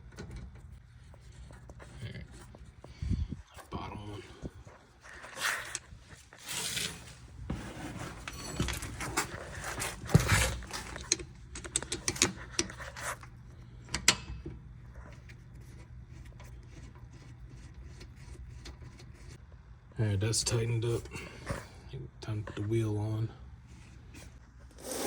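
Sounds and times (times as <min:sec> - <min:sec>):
metal tools clinking and rattling: 0:08.1 - 0:13.0.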